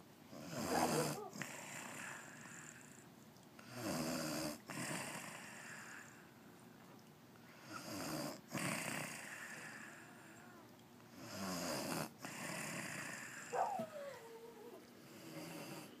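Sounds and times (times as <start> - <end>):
woman snoring: 0.4 - 2.8, 15.2 - 16.0.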